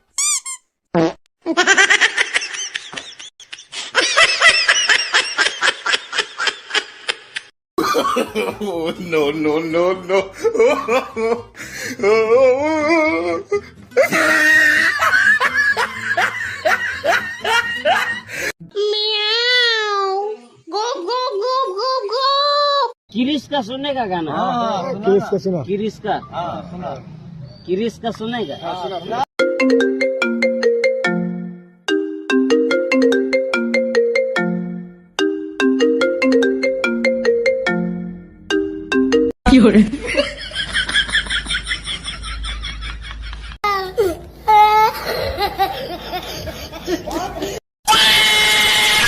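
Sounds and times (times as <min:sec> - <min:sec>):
person laughing: 0:01.5 - 0:18.5, 0:45.0 - 0:47.6.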